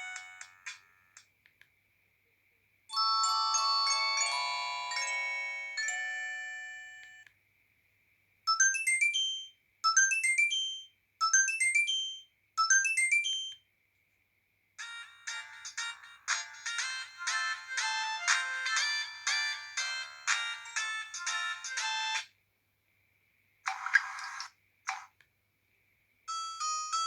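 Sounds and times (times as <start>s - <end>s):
polyphonic ringtone melody: 3.0s - 7.0s, 14.8s - 22.2s, 26.3s - 27.0s.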